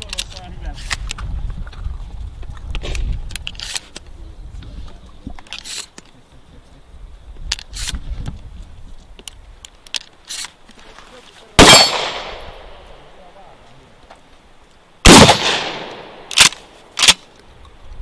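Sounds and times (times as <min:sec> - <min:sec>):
metallic clicks of shotgun handling: 0:02.6 - 0:04.1, 0:09.2 - 0:10.6, 0:15.4 - 0:17.5.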